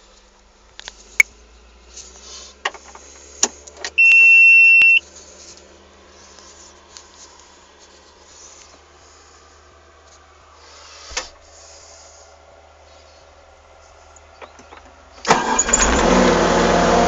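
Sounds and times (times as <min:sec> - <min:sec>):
low steady hum: 0:00.0 - 0:16.0
high electronic beep: 0:04.0 - 0:05.0
sharp clicks and knocks: 0:14.2 - 0:16.0.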